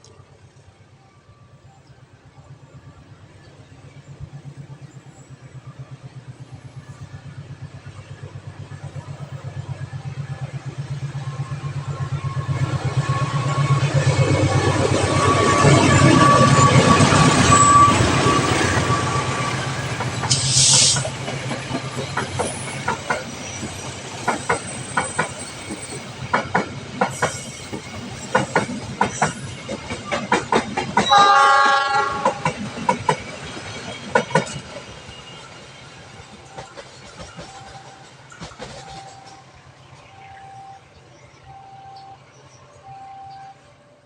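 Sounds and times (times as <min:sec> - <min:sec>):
train rumbling past: 0:00.0 - 0:44.0
train wheels clicking on rail joints: 0:03.0 - 0:43.0
train horn blast: 0:31.0 - 0:32.6.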